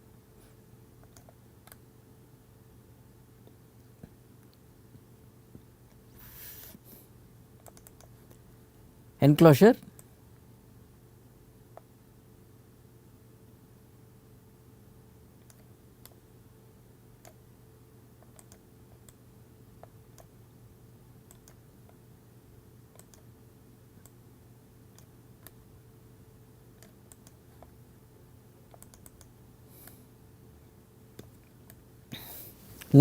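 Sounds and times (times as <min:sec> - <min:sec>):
mouse and keyboard clicks: 0:07.6 - 0:08.4, 0:18.2 - 0:19.2, 0:22.9 - 0:23.2, 0:28.7 - 0:29.3.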